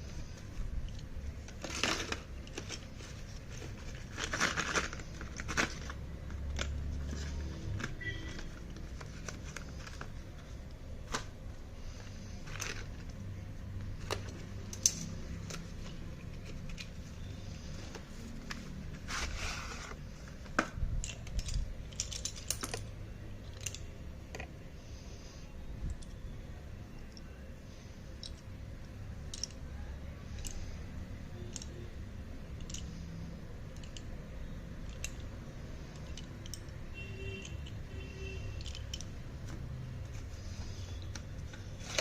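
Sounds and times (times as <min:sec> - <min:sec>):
light clicks and taps of pencils: 0:00.3 - 0:10.1, 0:14.0 - 0:17.7, 0:20.4 - 0:24.5, 0:25.8 - 0:26.2, 0:28.2 - 0:37.9, 0:38.5 - 0:42.0.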